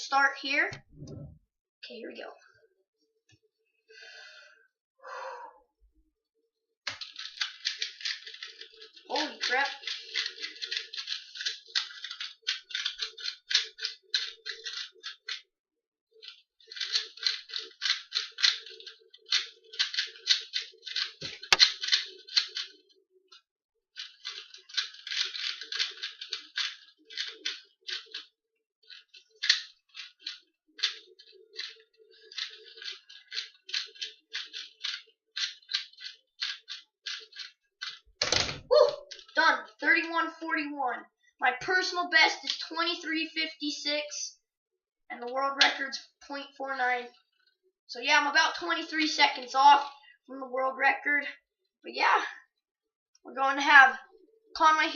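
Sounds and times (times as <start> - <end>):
puzzle cube clicking: 6.9 - 15.4, 16.2 - 22.8, 24.0 - 28.2, 28.8 - 39.4.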